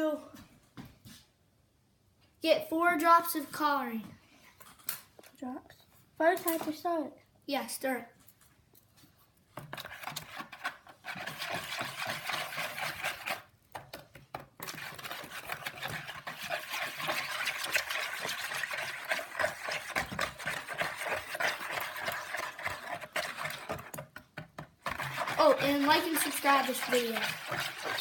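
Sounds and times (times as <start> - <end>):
utensil scraping and clinking container: 9.6 - 28.0.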